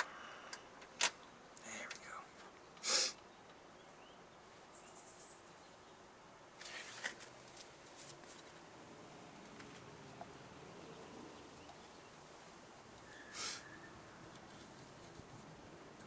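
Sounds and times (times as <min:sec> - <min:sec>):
faint rustling handling noise: 0:06.6 - 0:08.7, 0:14.2 - 0:16.0.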